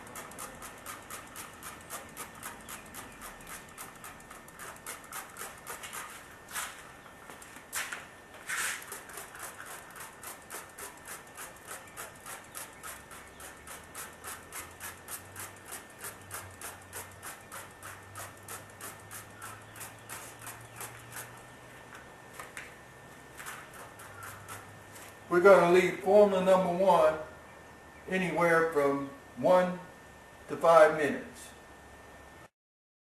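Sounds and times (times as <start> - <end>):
rubbing on plastic lens: 0.3 - 6.8, 8.5 - 21.5, 23.4 - 25.2.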